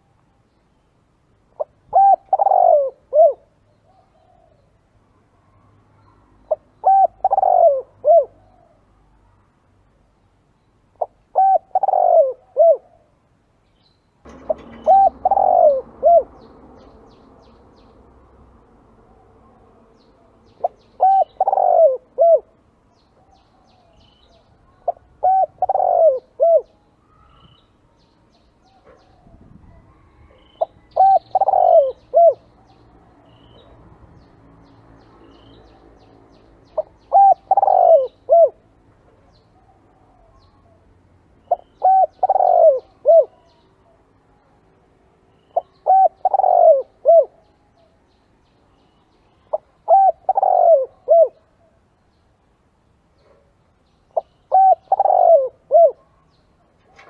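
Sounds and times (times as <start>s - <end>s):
dove cooing: 1.6s - 4.6s, 6.5s - 8.8s, 11.0s - 13.1s, 14.3s - 16.5s, 20.6s - 22.6s, 24.8s - 27.4s, 28.8s - 32.5s, 36.8s - 38.6s, 41.5s - 44.0s, 45.6s - 47.4s, 49.5s - 51.8s, 54.2s - 56.2s
small birds chirping: 3.6s - 57.0s.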